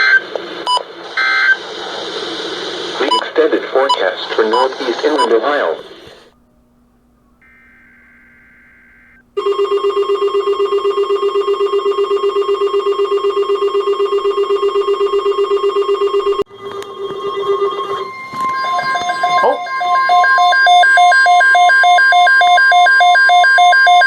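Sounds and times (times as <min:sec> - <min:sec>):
rapid pulsing beep: 0:03.1 - 0:05.4, 0:07.4 - 0:16.4, 0:17.2 - 0:24.0
steady alert tone: 0:07.4 - 0:16.4.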